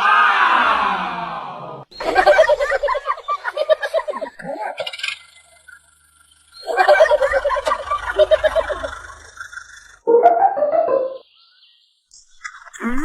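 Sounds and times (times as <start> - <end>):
high-pitched cartoon voice: 12.4 - 13.0.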